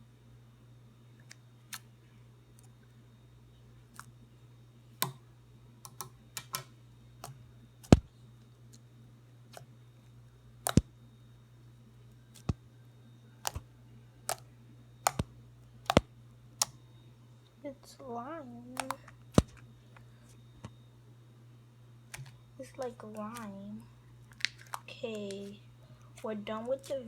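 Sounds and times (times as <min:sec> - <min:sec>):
slime clicking and popping: 0:10.7 - 0:10.9, 0:12.4 - 0:12.6, 0:15.1 - 0:15.3, 0:15.9 - 0:16.8, 0:18.8 - 0:19.6, 0:22.1 - 0:22.3, 0:24.3 - 0:25.4.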